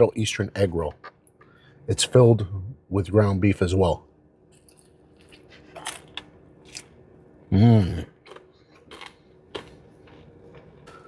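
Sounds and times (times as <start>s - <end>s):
crunchy pastry chewing: 8.2s - 11.0s.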